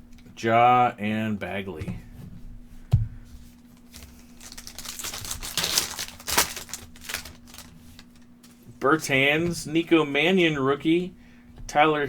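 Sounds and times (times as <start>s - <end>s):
wrapper tearing and crinkling: 3.8s - 8.3s.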